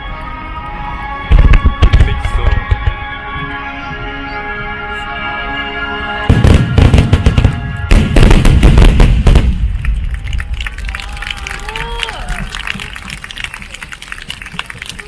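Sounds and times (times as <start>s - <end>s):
music with held tones: 0.0s - 8.0s
fireworks cracking and booming: 1.3s - 3.0s, 6.3s - 11.3s.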